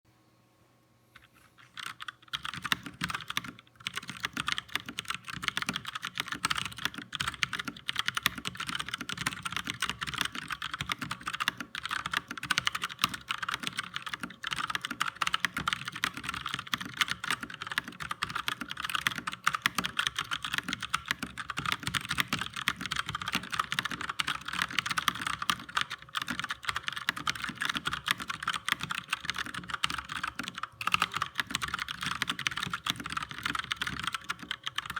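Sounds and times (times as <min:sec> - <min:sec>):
fast typing on mechanical keyboard: 0:01.6 - 0:34.9.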